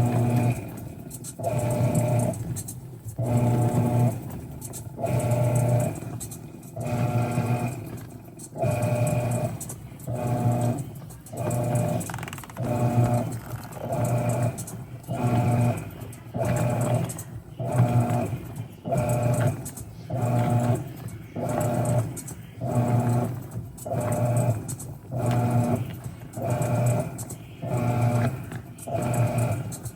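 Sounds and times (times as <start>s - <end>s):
washing machine motor churning: 0.0s - 29.9s.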